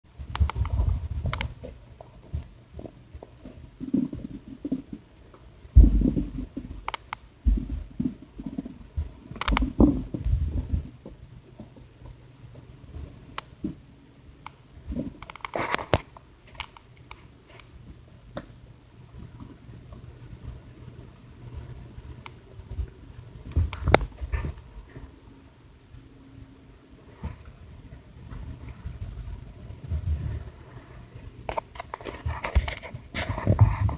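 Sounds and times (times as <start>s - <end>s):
low rumbles and thumps: 0.1s - 13.9s, 19.1s - 25.1s, 27.2s - 33.9s
puppy scuffling: 27.1s - 33.9s.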